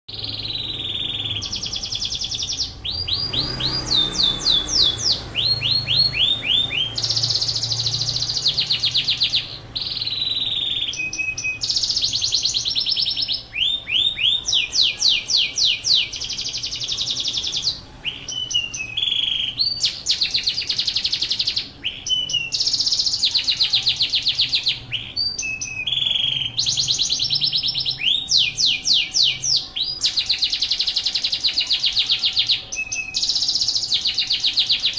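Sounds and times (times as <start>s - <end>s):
canary singing trills: 0.1s - 34.9s.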